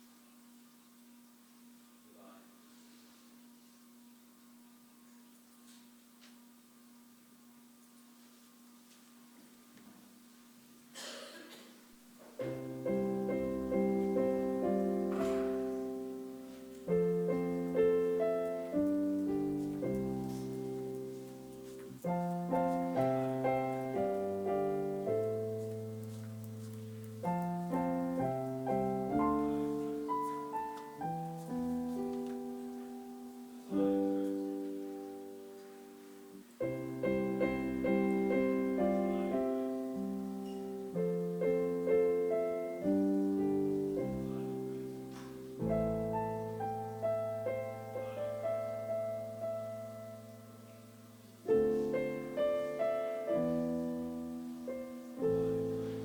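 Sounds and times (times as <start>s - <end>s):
solo piano chords: 12.4s - 56.0s.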